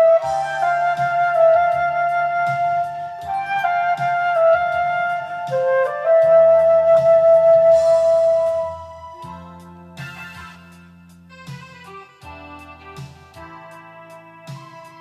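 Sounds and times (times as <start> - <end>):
flute playing melody: 0.0 - 15.0
midi backing track: 0.0 - 15.0.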